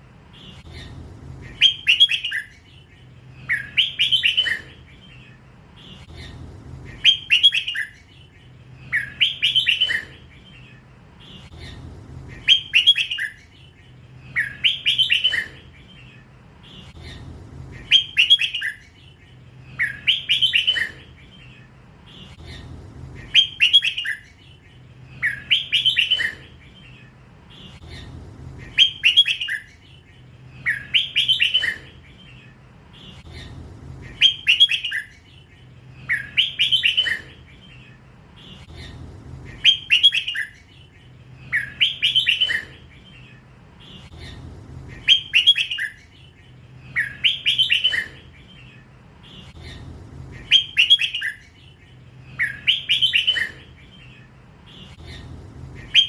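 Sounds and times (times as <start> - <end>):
bulbul singing: 0.0 - 56.0.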